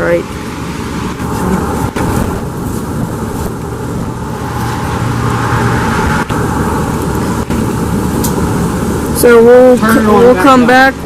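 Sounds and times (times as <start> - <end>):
utility vehicle engine running: 0.0 - 11.0.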